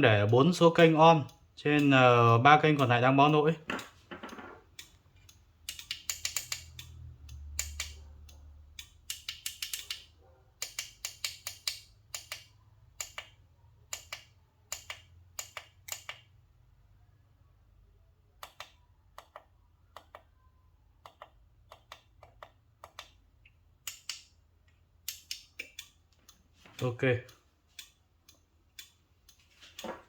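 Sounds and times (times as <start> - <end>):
sharp light clicks of small parts: 3.7 - 16.3, 21.0 - 30.0.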